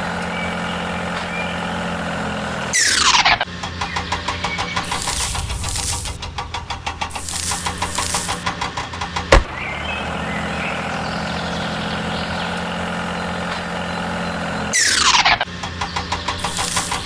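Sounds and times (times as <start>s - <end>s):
sharp click: 4.8s - 6.2s, 7.1s - 8.4s, 16.4s - 17.0s.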